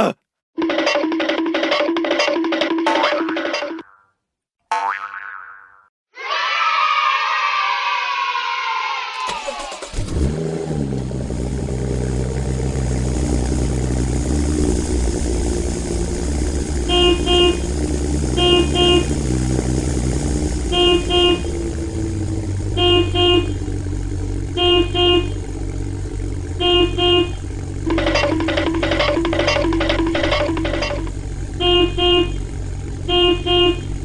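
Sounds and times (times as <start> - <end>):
vehicle engine running: 9.6 - 34.0
horn beeping: 16.6 - 34.0.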